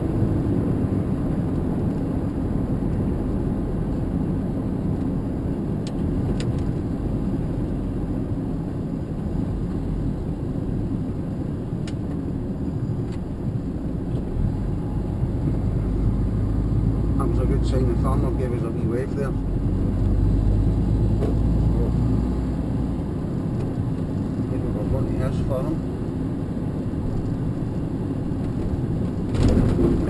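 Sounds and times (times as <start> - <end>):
road noise: 0.0 - 30.0
vehicle engine rumble: 0.0 - 30.0.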